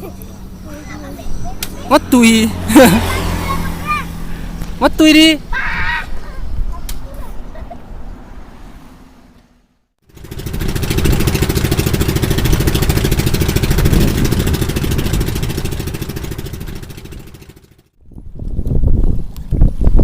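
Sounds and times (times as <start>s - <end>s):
small engine running hard: 0.0s - 5.3s, 10.0s - 18.0s.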